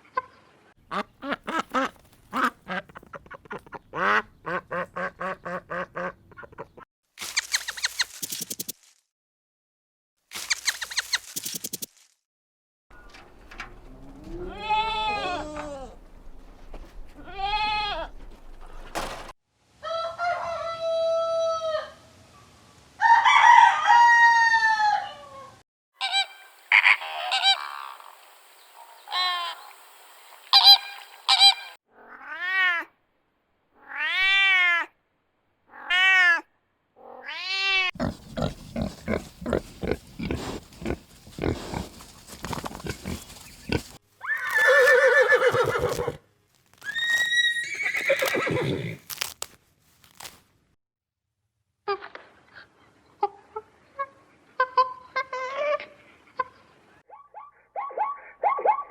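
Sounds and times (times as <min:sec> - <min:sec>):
loud animal calls: 0:26.0 - 0:28.2.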